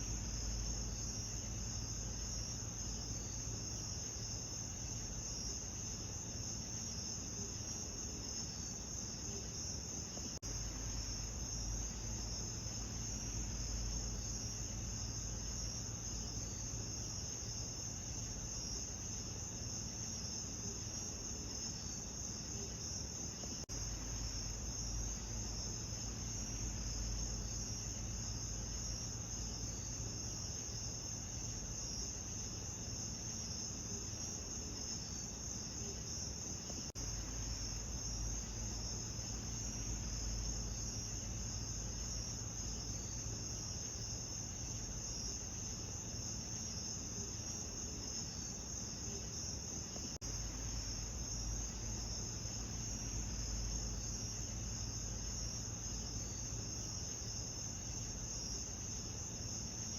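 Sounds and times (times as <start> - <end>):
crickets chirping: 0.0 - 59.9.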